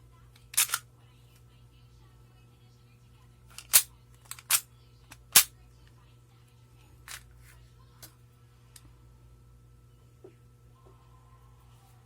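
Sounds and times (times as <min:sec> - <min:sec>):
toy pistol mechanical clicks: 0:00.5 - 0:00.8, 0:03.5 - 0:05.5.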